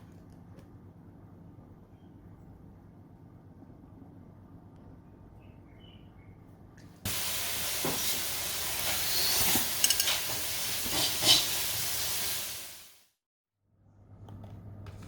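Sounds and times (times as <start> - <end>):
food sizzling in oiled pan: 7.1 - 13.0.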